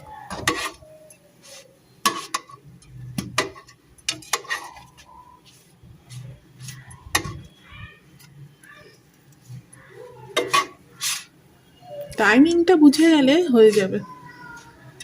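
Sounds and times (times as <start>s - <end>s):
utensils clinking against a dish: 10.3s - 11.3s.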